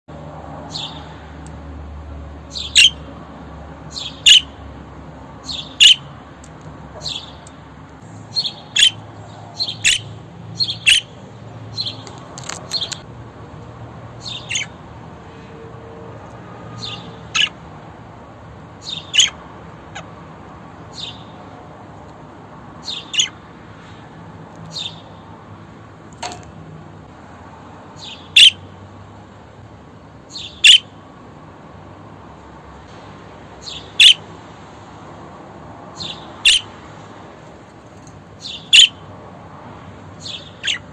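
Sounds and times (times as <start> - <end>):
budgerigar chirping: 2.5 - 3.0, 3.9 - 4.6, 5.5 - 6.1, 8.3 - 9.0, 9.6 - 11.1, 14.2 - 14.8, 16.8 - 17.6, 18.8 - 20.1, 22.8 - 23.4, 28.0 - 28.6, 30.3 - 30.9, 33.6 - 34.2, 36.0 - 36.7, 38.4 - 39.0, 40.2 - 40.9.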